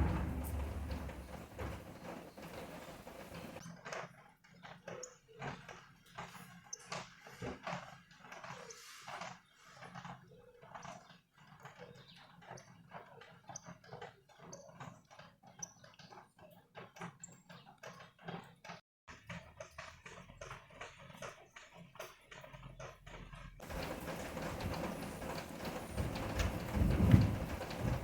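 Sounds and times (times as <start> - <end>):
crockery pings: 0.0 - 2.0.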